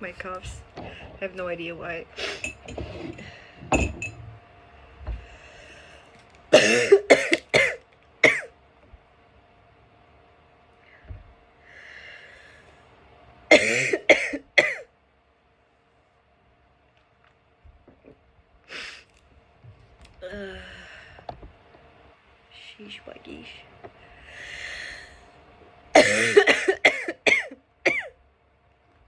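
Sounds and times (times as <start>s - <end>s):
quiet breathing: 5.1s - 6.2s, 10.8s - 12.9s, 20.3s - 21.4s, 23.9s - 25.4s
person coughing: 6.6s - 8.5s, 13.5s - 14.8s, 26.0s - 28.1s.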